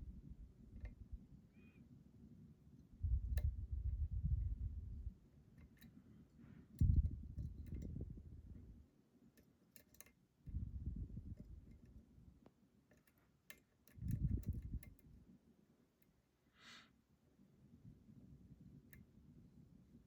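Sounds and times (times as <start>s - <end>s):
lock pick clicking: 9.4s - 10.2s.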